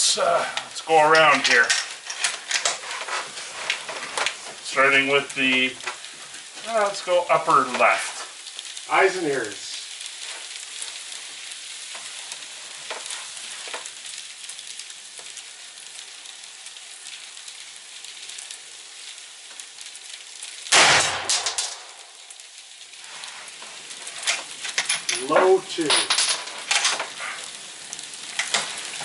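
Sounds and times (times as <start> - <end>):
steady hiss: 0.0 - 29.0
rifle shot with echo: 20.7 - 22.0.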